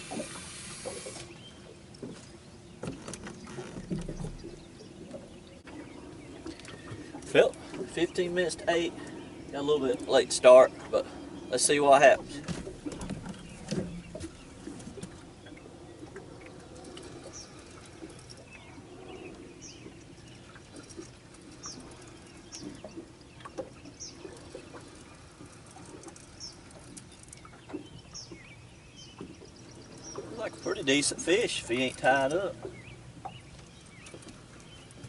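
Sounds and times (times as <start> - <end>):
faint clicks: 19.3 - 28.4.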